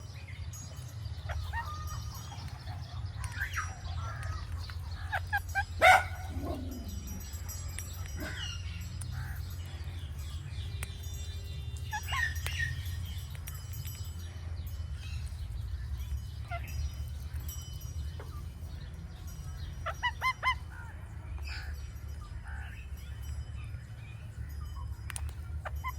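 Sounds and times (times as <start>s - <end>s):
steady low rumble: 0.0s - 25.9s
parrot calls and clicks: 1.3s - 14.2s, 19.5s - 21.7s, 24.8s - 25.9s.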